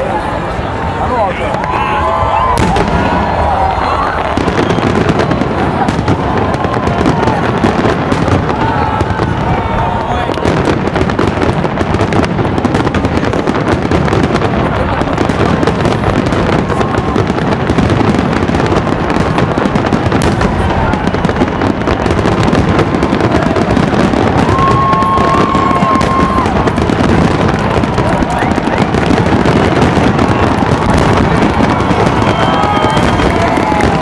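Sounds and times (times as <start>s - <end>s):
fireworks bangs and crackling: 0.0s - 34.0s
firework whistle: 1.5s - 10.7s, 20.2s - 34.0s.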